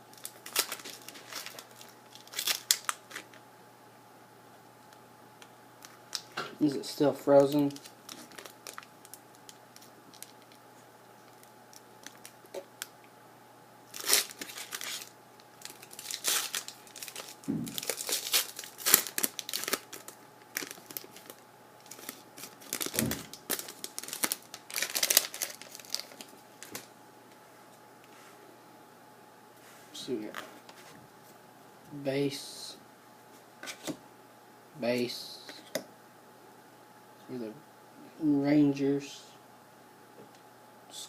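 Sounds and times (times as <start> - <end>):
wrappers tearing and crinkling: 0.1 - 3.4, 7.2 - 10.6, 11.3 - 12.6, 13.9 - 26.9.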